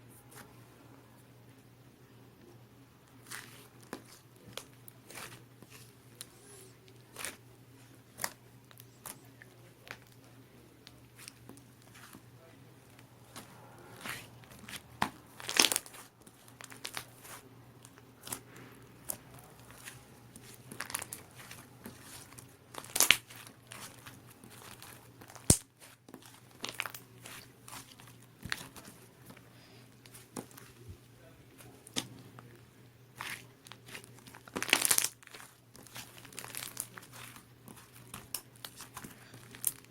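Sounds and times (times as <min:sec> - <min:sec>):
slime crackling and snapping: 0:13.3 - 0:29.4, 0:33.2 - 0:39.9.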